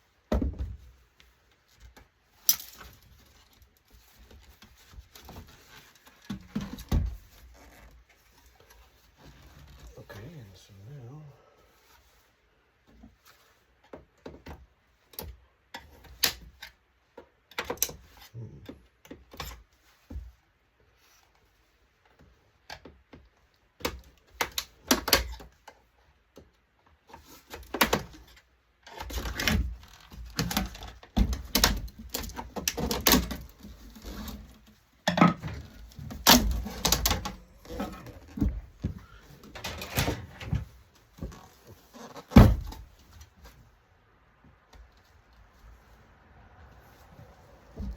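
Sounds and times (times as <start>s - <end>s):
monitor parts clicking and clattering: 35.1s - 40.8s.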